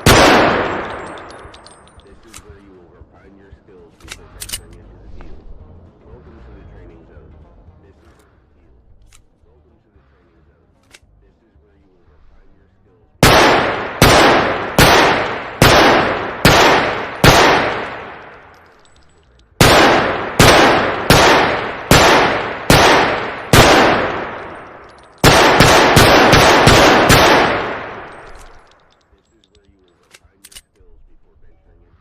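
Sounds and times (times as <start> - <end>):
pistol shots echoing: 0.0 - 2.6, 13.2 - 28.9.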